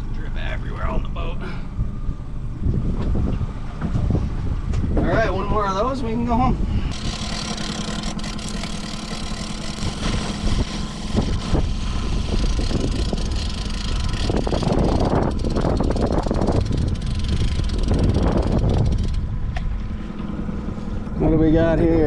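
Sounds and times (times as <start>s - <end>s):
rush of wind or water: 1.4s - 7.0s, 10.0s - 22.0s
outboard motor running: 6.9s - 22.0s.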